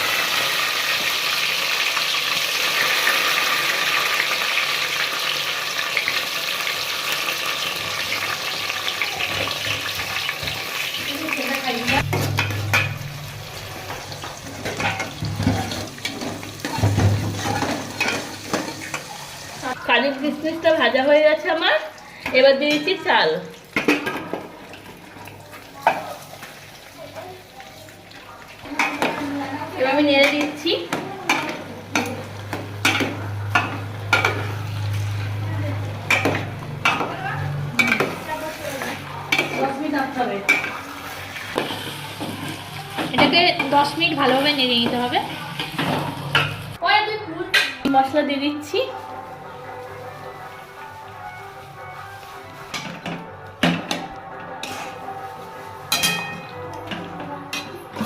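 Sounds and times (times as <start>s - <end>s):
nuts frying in hot fat: 0.0s - 19.8s, 20.9s - 46.8s
spatula scraping a pot: 54.6s - 56.3s.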